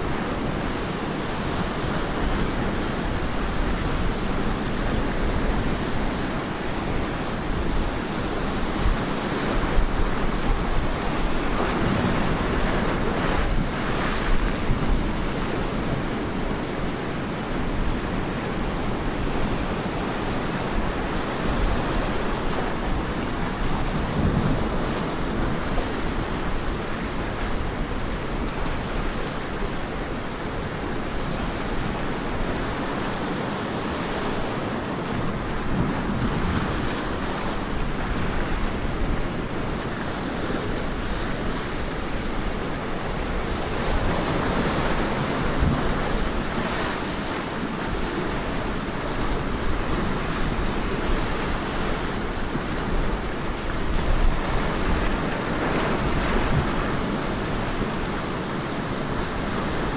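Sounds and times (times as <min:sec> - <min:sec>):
ocean surf breaking on beach: 0:00.0 - 0:59.9
wind on microphone: 0:00.0 - 0:59.9.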